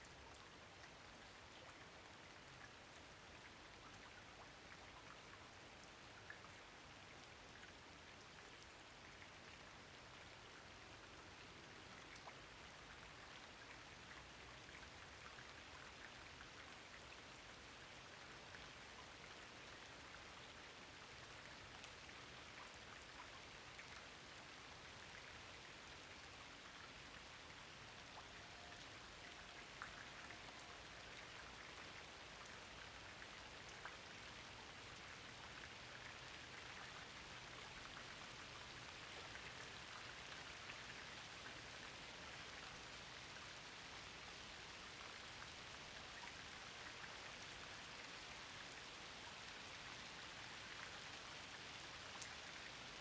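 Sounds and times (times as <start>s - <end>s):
rain falling: 5.0s - 53.0s
water drips: 11.8s - 25.6s, 28.0s - 46.6s.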